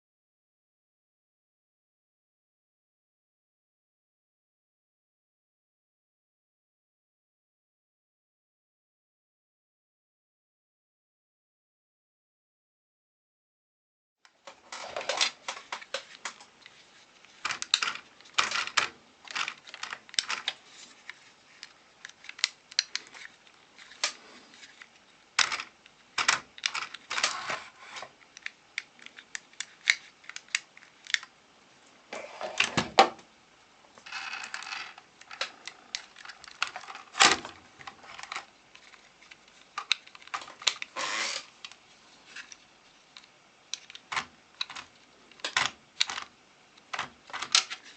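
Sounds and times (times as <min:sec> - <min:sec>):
clicks and rattles of small parts: 0:14.4 - 0:31.3, 0:34.0 - 0:47.9.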